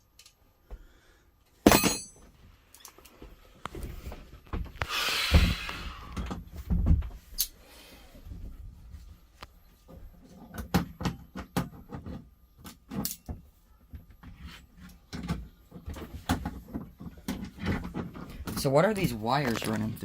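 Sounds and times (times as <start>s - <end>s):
tools clicking and rattling: 12.7s - 13.3s.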